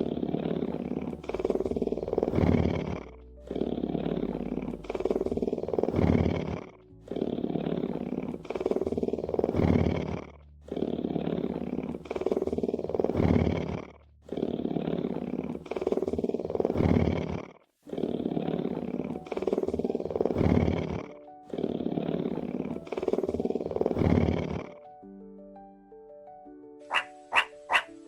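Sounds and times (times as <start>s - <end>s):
big cat roaring: 0.0s - 24.8s
piano-like tune: 18.4s - 28.0s.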